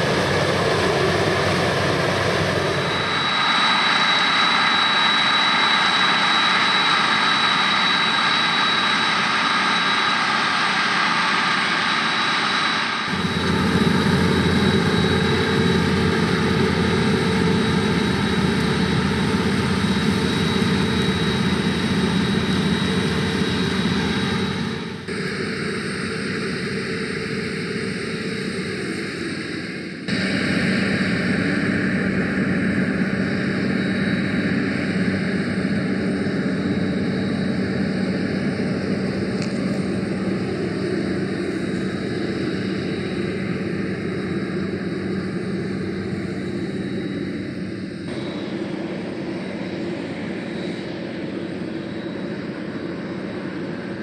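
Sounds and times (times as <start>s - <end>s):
combine harvester running: 12.1s - 24.4s.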